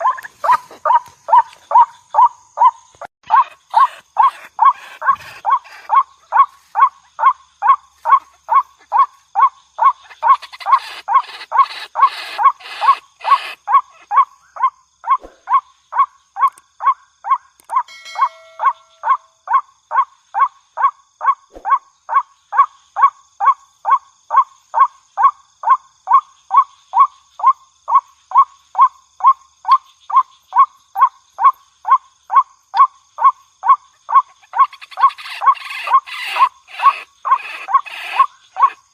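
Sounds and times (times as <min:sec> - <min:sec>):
waterhen calling: 0:00.0 - 0:16.6, 0:17.7 - 0:19.6, 0:34.1 - 0:38.8.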